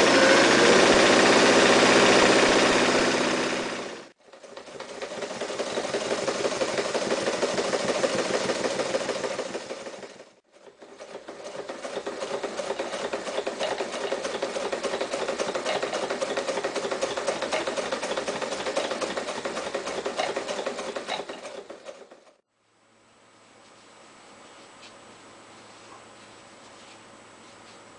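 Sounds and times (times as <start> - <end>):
sewing machine stitching rattle: 0.5 - 22.4.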